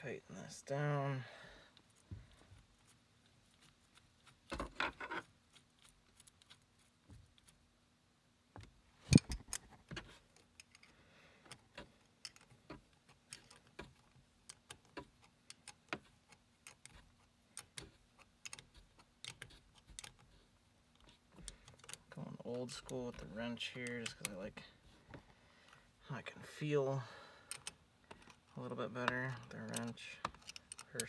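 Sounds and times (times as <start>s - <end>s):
hand tools clicking on metal: 21.4s - 24.4s, 27.5s - 28.4s, 29.0s - 31.0s.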